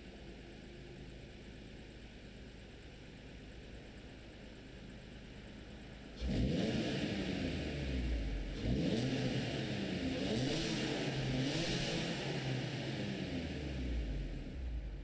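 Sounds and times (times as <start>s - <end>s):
car engine revving: 6.2s - 14.9s.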